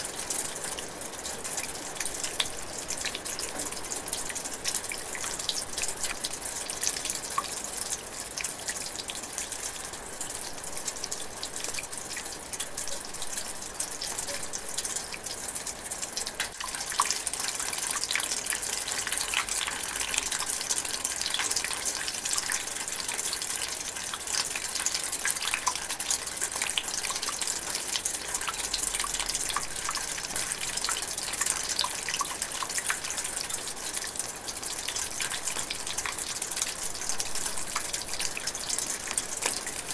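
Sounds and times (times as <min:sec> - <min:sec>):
light rain drizzling: 0:00.0 - 0:39.9.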